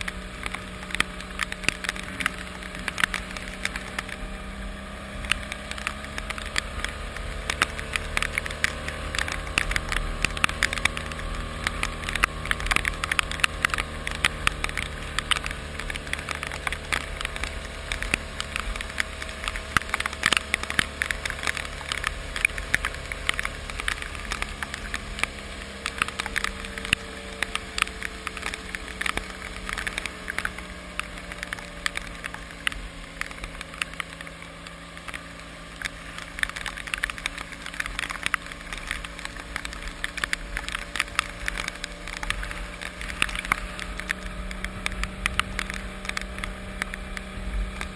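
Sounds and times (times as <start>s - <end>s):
raindrops hitting hard surface: 0.0s - 47.9s
vehicle engine hum: 0.0s - 47.9s.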